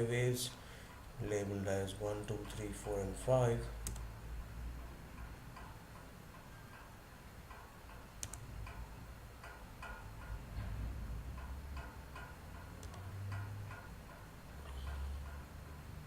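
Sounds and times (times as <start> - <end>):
light computer clicks: 3.8 - 4.1, 7.6 - 10.0, 11.4 - 13.9.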